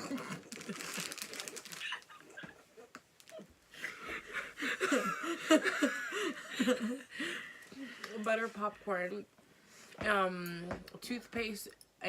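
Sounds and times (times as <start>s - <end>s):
woman laughing: 0.0s - 7.1s.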